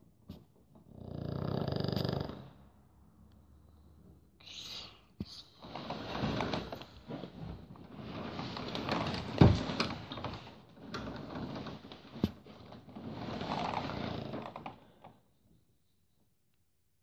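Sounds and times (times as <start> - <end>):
dog snoring: 0.9 - 2.7.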